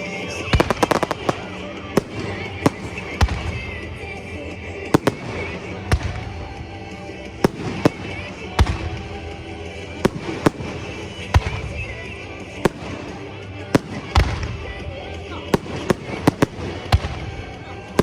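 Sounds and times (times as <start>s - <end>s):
fireworks bursting: 0.0s - 18.0s
music playing: 0.0s - 18.0s.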